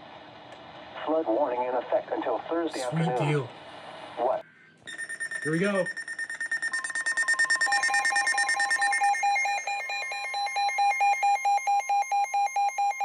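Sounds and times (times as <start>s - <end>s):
pulsing electronic alert beeping: 4.9s - 13.0s
pulsing tone: 4.9s - 13.0s.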